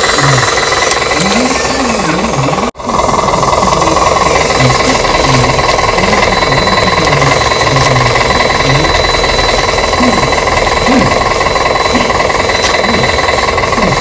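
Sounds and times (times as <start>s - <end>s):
motor whine: 0.0s - 14.0s
toy truck mechanical rattle: 0.0s - 14.0s.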